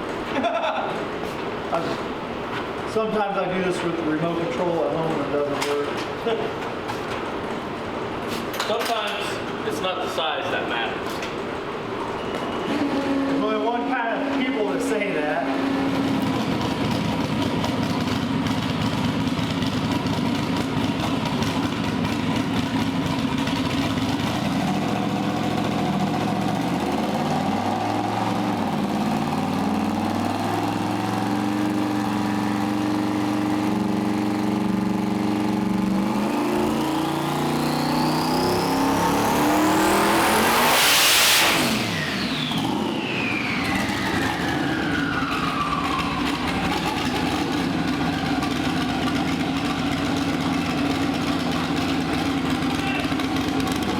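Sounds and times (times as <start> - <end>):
turbo whine: 12.1 - 17.6, 24.9 - 48.6
engine revving on dyno: 12.7 - 53.9.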